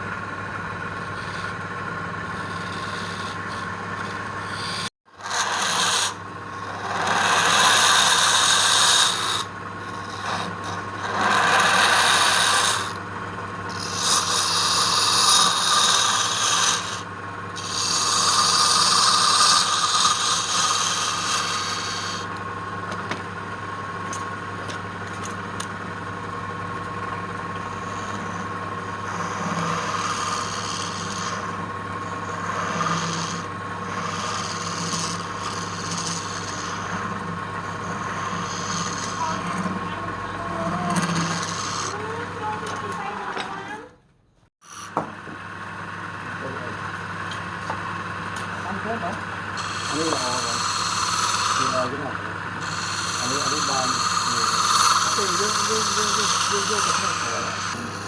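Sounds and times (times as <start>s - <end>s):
woodworking machine motor hum: 0.0s - 43.9s, 44.6s - 58.0s
hand tool scraping wood: 1.0s - 13.0s, 13.7s - 22.3s, 27.6s - 39.8s, 40.5s - 43.6s, 49.6s - 58.0s.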